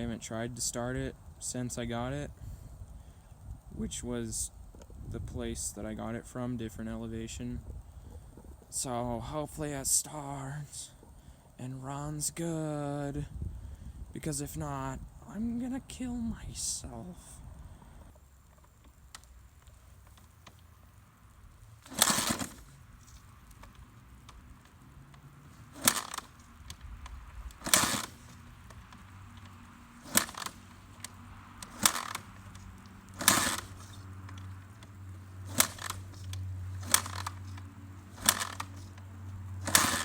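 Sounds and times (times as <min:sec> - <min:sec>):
motorcycle kick-start clunks: 0:21.8 - 0:40.0.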